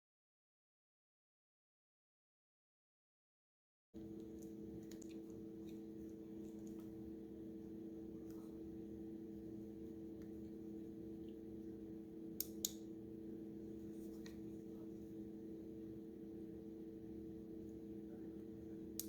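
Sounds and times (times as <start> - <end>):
faint low hum: 4.0 - 19.0
sharp clicks: 12.4 - 12.8.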